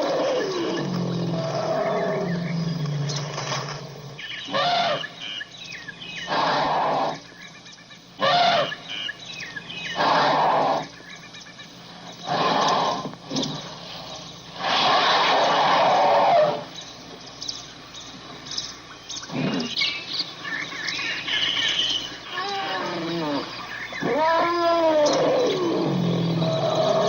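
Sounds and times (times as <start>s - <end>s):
elephant calls: 0.0s - 5.5s, 8.2s - 9.2s, 19.3s - 27.0s
faint birds chirping: 0.0s - 27.0s.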